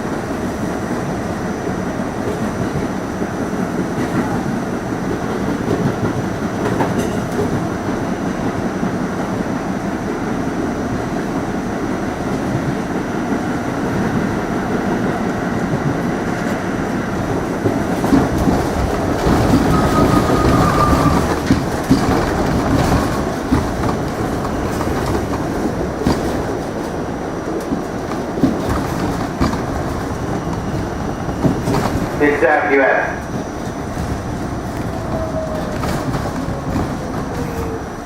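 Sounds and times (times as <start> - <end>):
subway car rumbling: 0.0 - 38.0
wheels clicking over rails: 3.6 - 8.6, 14.9 - 32.4, 33.2 - 38.0
thin wheel squeal: 19.6 - 21.3.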